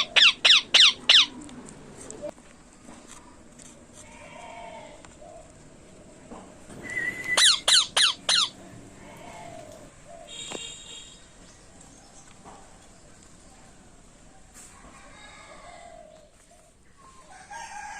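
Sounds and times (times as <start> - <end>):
parrots squawking: 0.0 - 1.4, 7.0 - 9.9.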